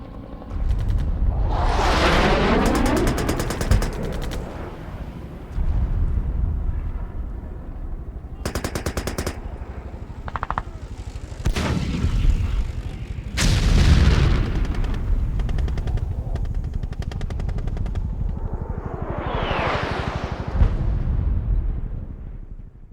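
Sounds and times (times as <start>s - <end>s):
constant low rumble: 0.0s - 22.9s
heavy explosions: 0.5s - 22.5s
distant gunfire bursts: 2.5s - 5.2s, 8.4s - 11.5s
machine-gun bursts: 2.6s - 4.4s, 8.4s - 9.5s.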